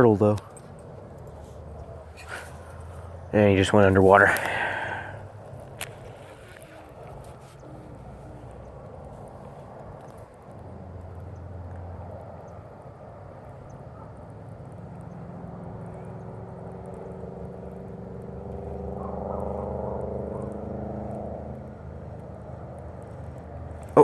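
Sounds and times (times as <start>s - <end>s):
steady engine hum: 0.0s - 24.0s.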